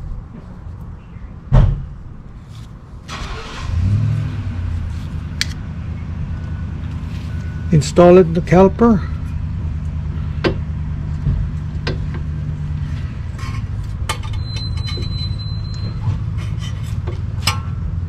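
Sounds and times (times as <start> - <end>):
steady low hum: 4.1 - 18.0.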